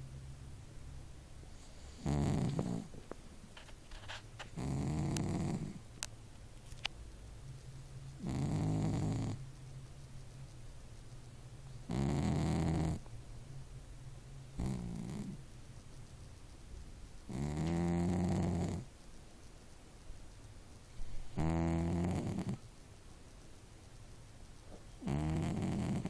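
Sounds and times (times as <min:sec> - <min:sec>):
cat snoring: 0:01.5 - 0:03.0, 0:04.5 - 0:05.8, 0:08.2 - 0:09.4, 0:11.9 - 0:13.1, 0:14.6 - 0:15.4, 0:17.3 - 0:18.9, 0:21.3 - 0:22.6, 0:25.0 - 0:26.0.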